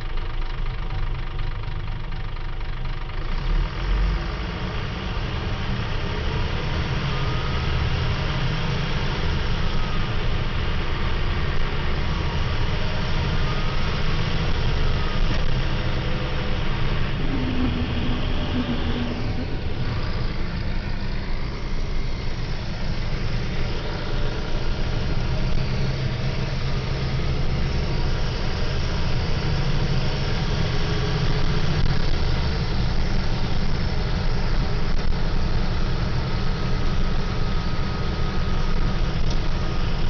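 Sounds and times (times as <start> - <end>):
bus diesel engine running: 0.0 - 40.0.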